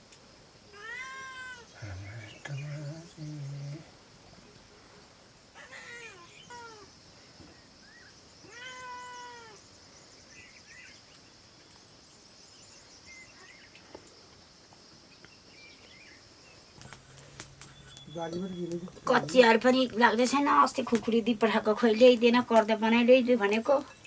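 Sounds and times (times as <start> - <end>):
steady high hiss: 0.0 - 24.0
faint chirps: 0.6 - 24.0
animal crying: 0.8 - 2.2, 5.6 - 6.9, 8.4 - 9.6.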